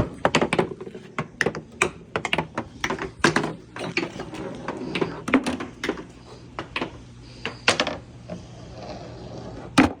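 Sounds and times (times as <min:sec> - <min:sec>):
ball clacking on wooden track: 0:00.0 - 0:08.0.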